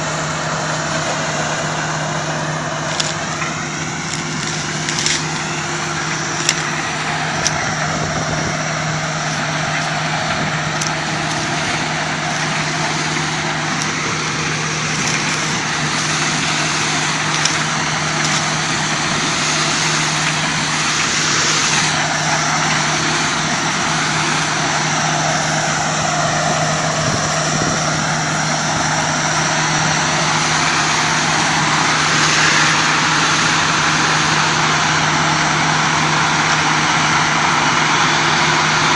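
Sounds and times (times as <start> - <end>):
harvesting machine running: 0.0 - 38.9
sharp clicks: 2.9 - 7.8, 10.8 - 18.6.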